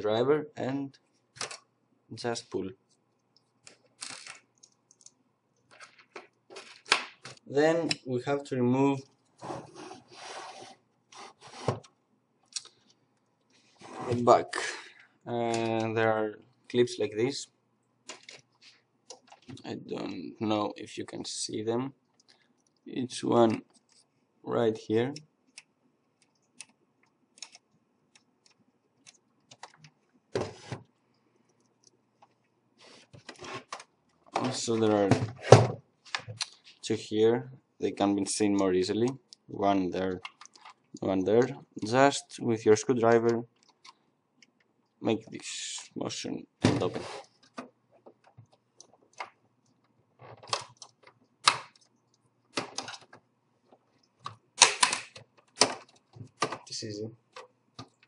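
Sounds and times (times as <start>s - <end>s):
plastic case clips snapping: 54.6s - 55.8s.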